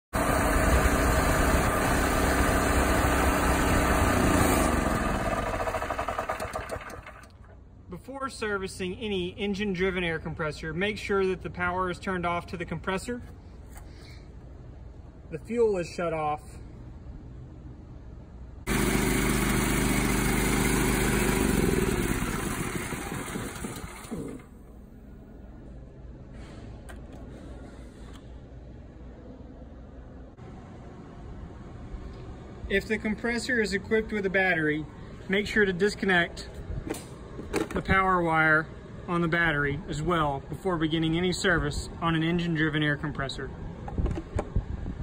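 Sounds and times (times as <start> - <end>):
air compressor engine running: 0.2 - 7.6, 18.7 - 25.3.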